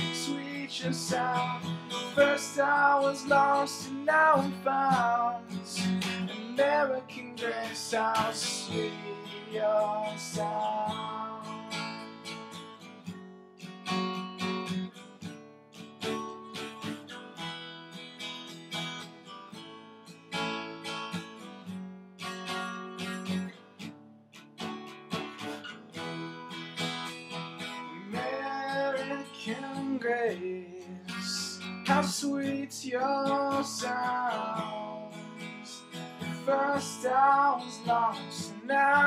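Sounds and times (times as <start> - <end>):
acoustic guitar strumming: 0.0 - 39.0.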